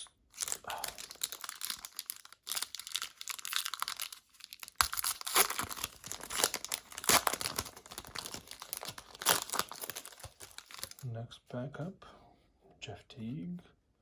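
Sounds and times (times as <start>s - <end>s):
plastic wrapper crinkling: 0.3s - 11.0s.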